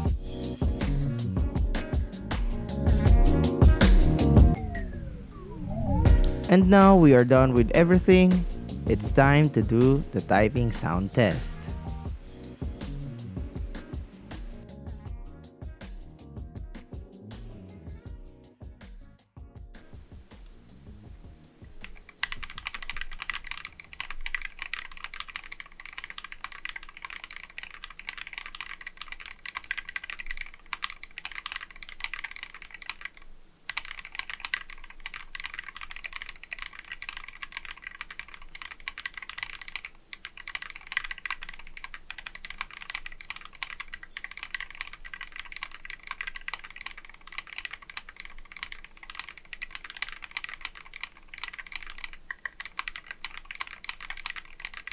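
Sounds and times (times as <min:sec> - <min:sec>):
mechanical keyboard typing: 0:19.8 - 0:54.9.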